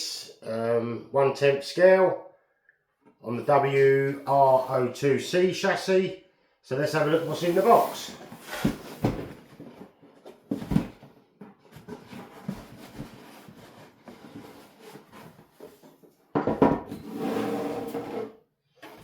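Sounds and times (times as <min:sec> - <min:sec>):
cardboard box handled: 0:07.4 - 0:15.8.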